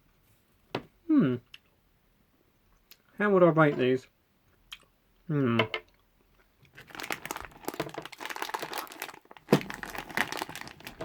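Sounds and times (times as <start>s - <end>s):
sweet packaging crinkling: 6.7s - 11.0s.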